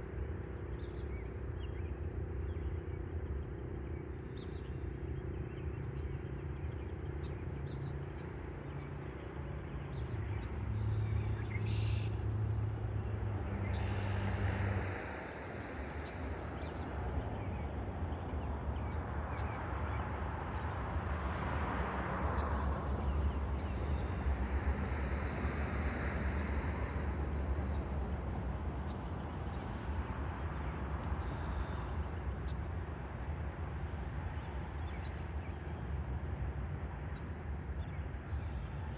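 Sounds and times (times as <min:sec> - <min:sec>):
vehicles passing: 0:10.4 - 0:38.9.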